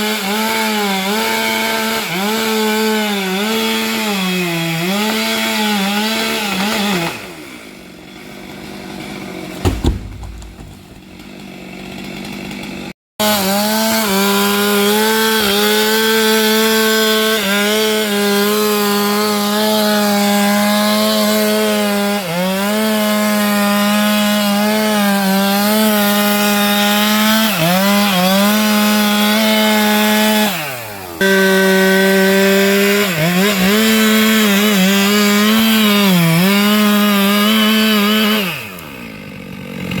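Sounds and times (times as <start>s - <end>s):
chainsaw cutting branches: 0.0s - 40.0s
sharp knock: 9.6s - 11.1s.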